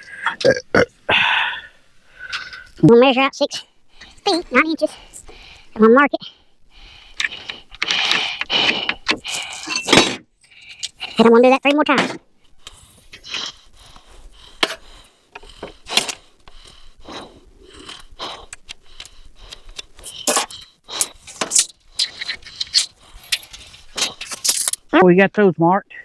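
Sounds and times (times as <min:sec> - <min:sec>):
tape measure scrapes and clicks: 0:19.0 - 0:24.8.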